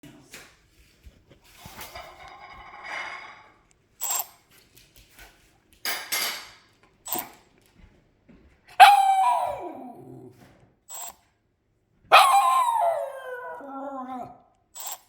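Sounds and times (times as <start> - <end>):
dog howling bark: 8.8 - 10.3, 12.1 - 14.4.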